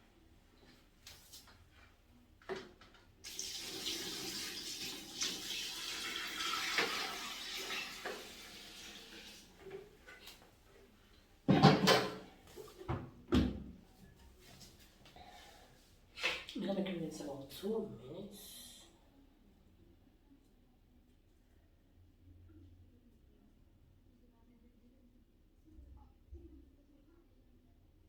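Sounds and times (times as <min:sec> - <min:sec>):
tap water running: 0:03.2 - 0:10.0.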